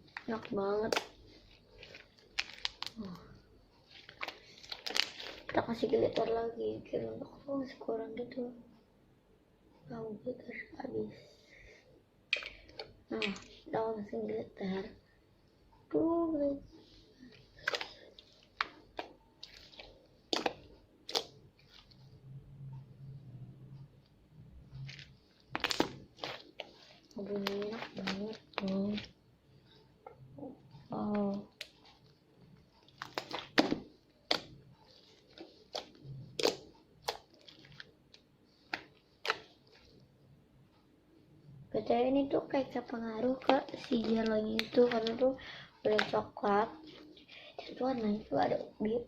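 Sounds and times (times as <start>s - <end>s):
faint low hum: 0.0s - 49.0s
slime popping and clicking: 20.3s - 21.4s, 25.5s - 26.4s, 45.9s - 46.2s
slime wet pops and clicks: 20.3s - 21.4s.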